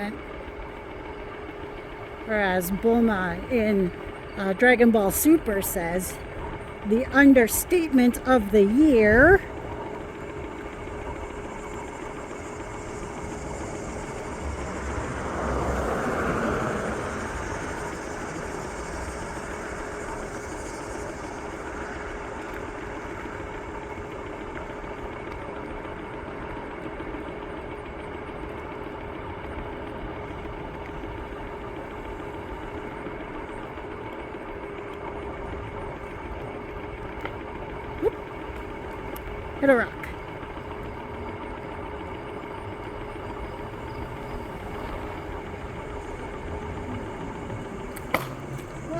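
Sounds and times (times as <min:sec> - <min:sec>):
electric scooter motor whine: 0:00.0 - 0:48.9
road and wind noise: 0:12.6 - 0:24.3, 0:42.4 - 0:48.9.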